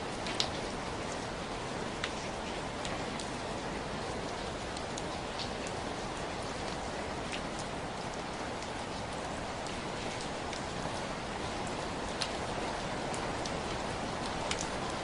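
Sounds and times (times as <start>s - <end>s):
rain falling: 0.0s - 15.0s.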